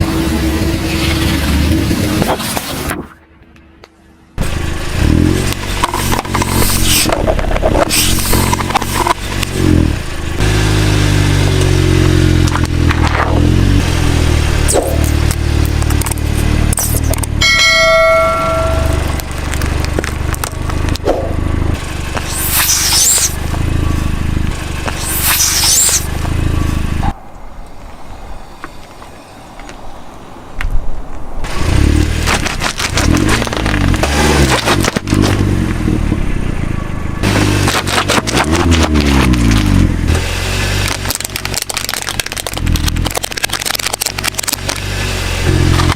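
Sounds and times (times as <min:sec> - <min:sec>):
car engine running: 0:00.0 - 0:03.0, 0:04.2 - 0:27.2, 0:31.4 - 0:45.9
short ringing tone: 0:17.4 - 0:19.2
objects crushed under tyres: 0:31.5 - 0:35.5, 0:37.2 - 0:39.9, 0:40.7 - 0:44.9.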